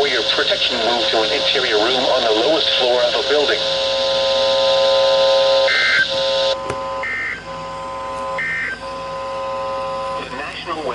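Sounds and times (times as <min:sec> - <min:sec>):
radio hiss: 0:00.0 - 0:06.6, 0:09.5 - 0:10.9
screechy digital data bursts: 0:00.0 - 0:07.8
buzzing hum: 0:00.0 - 0:10.9.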